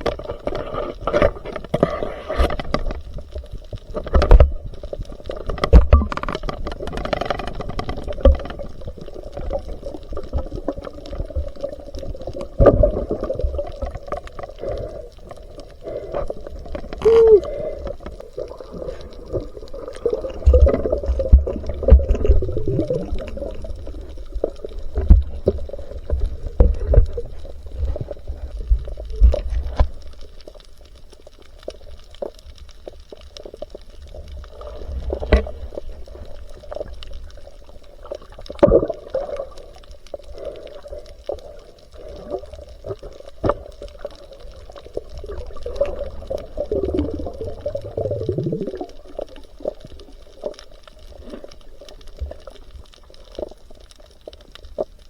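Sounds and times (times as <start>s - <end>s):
water sloshing and gurgling: 0.0s - 55.0s.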